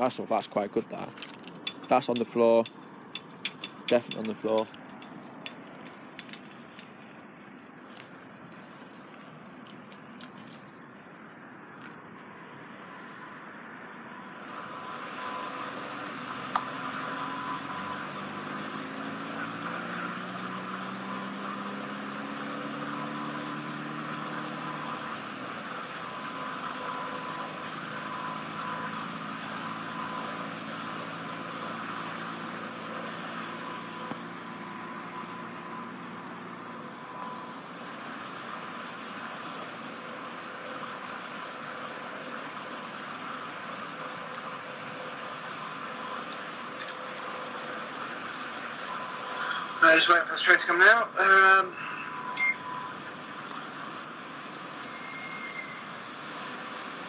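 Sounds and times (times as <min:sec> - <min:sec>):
vehicle engine idling: 0:00.0 - 0:12.1, 0:14.3 - 0:57.0
steady background noise: 0:00.0 - 0:57.0
faint clicks and ticks: 0:01.2 - 0:10.9.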